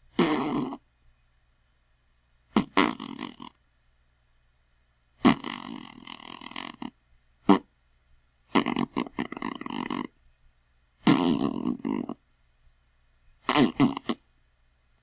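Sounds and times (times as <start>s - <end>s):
fart sound effects: 0.1s - 0.8s, 2.5s - 3.6s, 5.2s - 7.7s, 8.5s - 10.1s, 11.0s - 12.2s, 13.4s - 14.2s.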